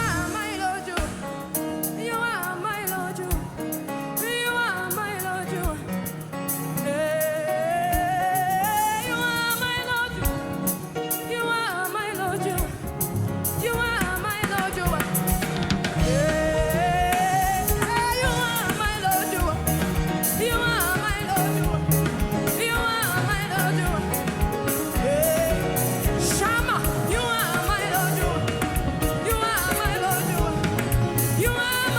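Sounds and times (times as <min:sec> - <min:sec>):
band with drum kit and bass: 0:00.0 - 0:31.9
lead singer singing: 0:00.0 - 0:31.9.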